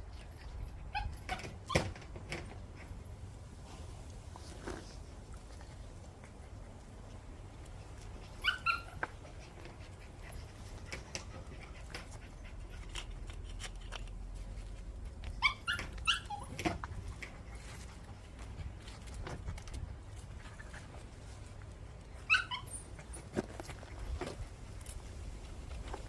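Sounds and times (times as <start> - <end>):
dog giving high-pitched calls: 8.3 - 9.2, 15.4 - 16.7, 22.2 - 23.2.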